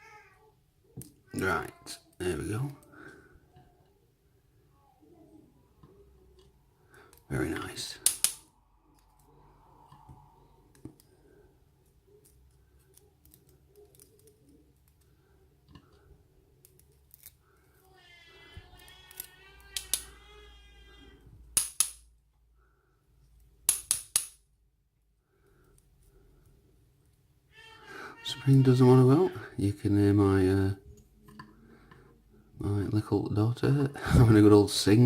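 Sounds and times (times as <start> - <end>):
girl singing faintly: 2.8 - 6.4
metallic clicks of lock parts: 8.0 - 9.2, 19.1 - 20.1, 21.6 - 22.1, 23.6 - 24.4.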